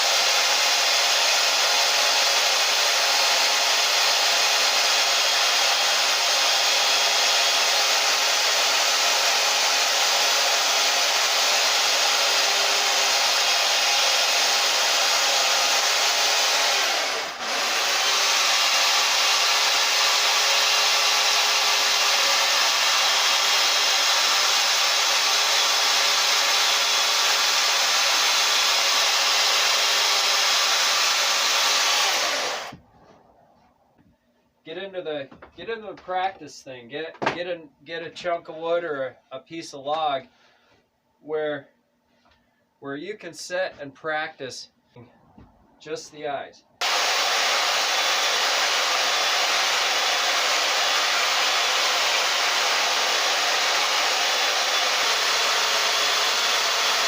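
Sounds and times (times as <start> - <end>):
chainsaw cutting wooden log: 0.0 - 32.8, 46.8 - 57.0.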